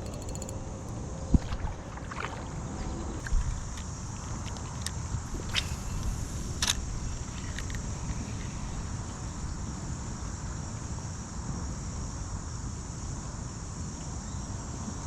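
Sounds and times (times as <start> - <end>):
low rumbling noise: 0.0 - 11.2
insects chirping: 0.0 - 15.0.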